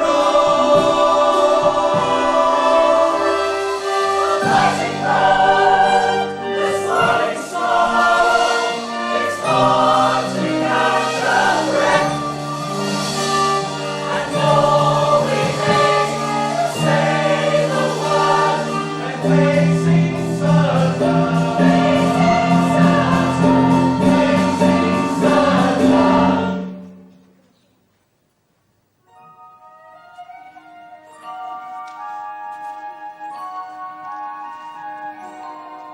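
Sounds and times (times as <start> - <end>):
chorus singing: 0.0 - 27.2
instrumental accompaniment: 0.0 - 27.5, 29.0 - 35.9.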